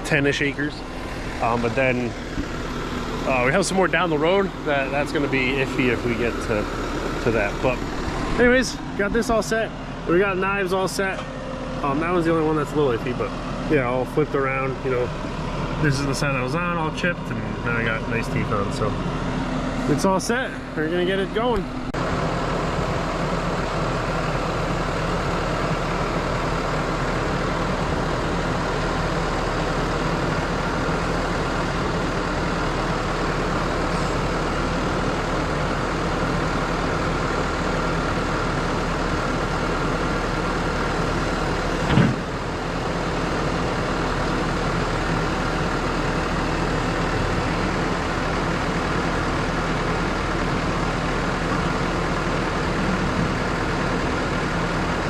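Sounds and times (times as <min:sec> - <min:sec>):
tractor engine running: 0:00.0 - 0:55.0
sharp clunk: 0:41.8 - 0:42.3.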